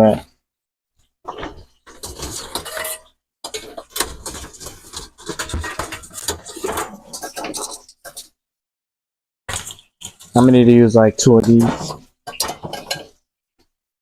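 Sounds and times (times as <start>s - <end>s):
kitchen items clattering: 1.3s - 8.3s, 9.5s - 13.2s.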